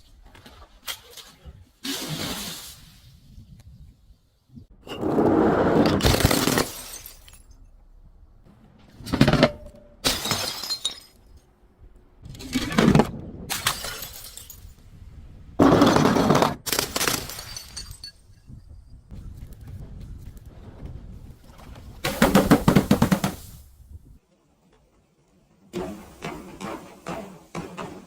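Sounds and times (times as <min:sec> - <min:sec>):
glass bottles shattering: 0:06.0 - 0:07.8, 0:10.0 - 0:11.4, 0:13.5 - 0:14.8, 0:16.7 - 0:18.5.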